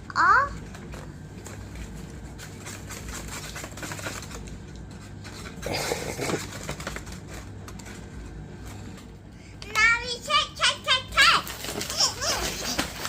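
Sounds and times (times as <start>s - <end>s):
paper popcorn bag crinkling: 0.6s - 9.0s, 10.3s - 13.0s.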